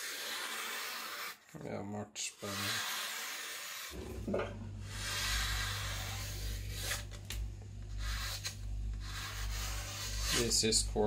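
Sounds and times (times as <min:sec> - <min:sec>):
low electrical hum: 0:04.0 - 0:11.0
knife slicing through paper: 0:08.0 - 0:10.6.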